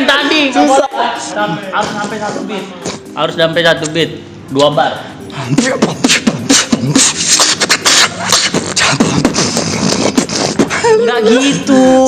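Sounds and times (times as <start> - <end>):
beatboxing mouth clicks: 5.4 - 10.9.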